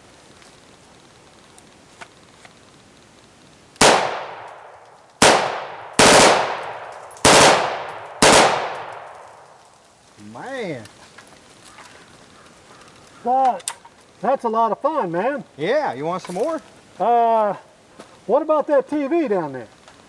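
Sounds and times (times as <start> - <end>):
rifle rapid shots with echo: 3.8 - 9.5.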